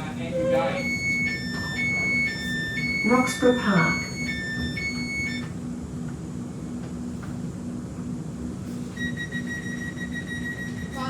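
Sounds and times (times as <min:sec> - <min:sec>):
train cabin hum: 0:00.0 - 0:08.9
steady high tone: 0:00.2 - 0:05.5
two-tone chime: 0:00.4 - 0:05.5.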